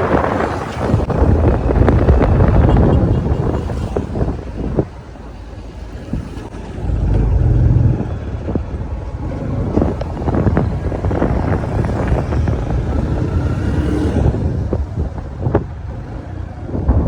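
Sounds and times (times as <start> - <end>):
traffic engines rumbling: 0.0 - 17.0.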